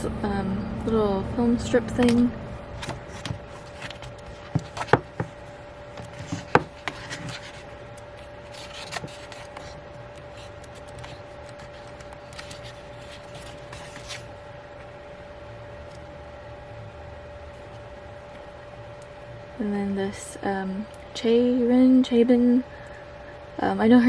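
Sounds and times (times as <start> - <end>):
faint hum: 0.0 - 24.0
paper and plastic rustling: 2.0 - 14.9.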